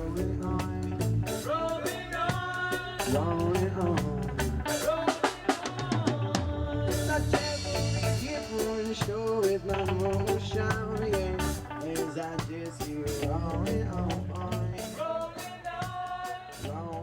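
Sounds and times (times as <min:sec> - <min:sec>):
reggae band music: 0:00.0 - 0:17.0
drum kit hits: 0:07.0 - 0:11.8.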